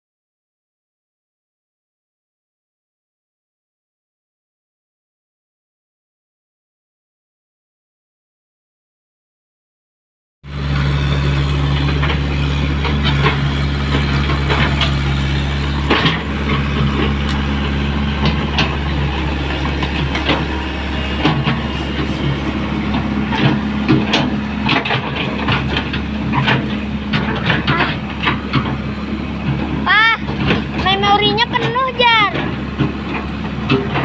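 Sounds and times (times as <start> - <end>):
excavator diesel engine: 10.4 - 34.0
metallic clanks and knocks: 11.0 - 34.0.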